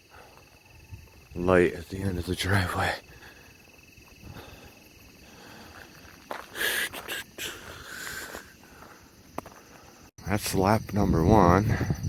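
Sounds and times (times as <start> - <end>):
crickets trilling: 0.0 - 12.0.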